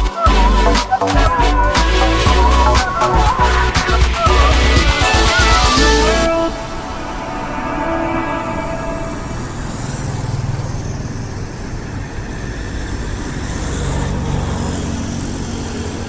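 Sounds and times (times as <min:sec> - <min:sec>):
background music: 0:00.0 - 0:09.9
low engine rumble: 0:00.6 - 0:16.0.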